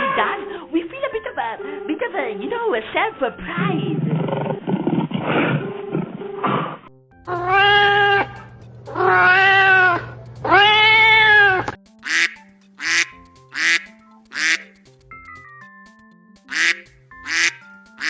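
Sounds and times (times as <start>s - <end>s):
light background music: 0.0s - 18.0s
cat meowing: 9.0s - 11.7s
duck quacking: 10.5s - 14.7s, 16.5s - 17.7s.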